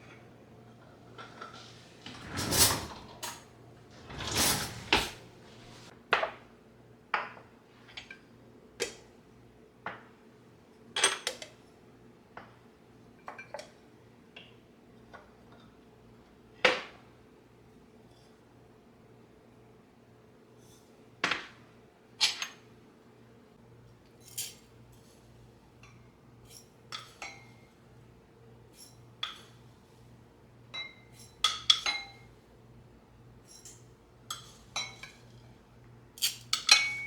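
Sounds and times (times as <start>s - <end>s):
objects scraping on hard surface: 1.2s - 5.9s.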